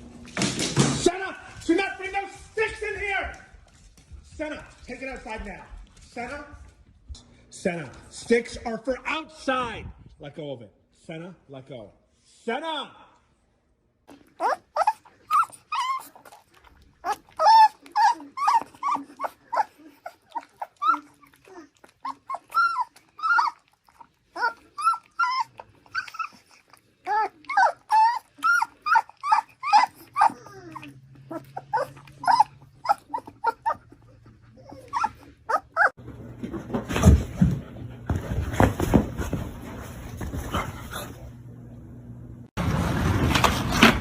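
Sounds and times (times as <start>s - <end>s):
dog crying high-pitched: 14.1s - 36.0s.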